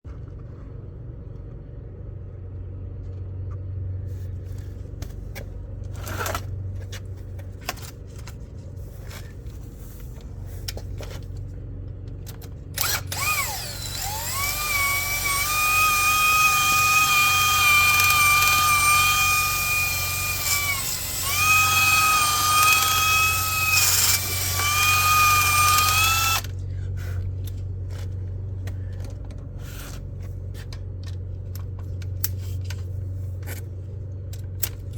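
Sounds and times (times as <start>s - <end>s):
steady low hum: 0.1s - 34.9s
power drill whining: 12.8s - 26.6s.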